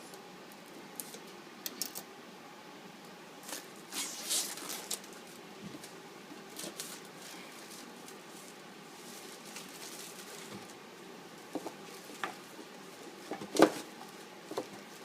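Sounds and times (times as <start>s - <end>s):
packaging crinkling and rustling: 3.4s - 10.8s.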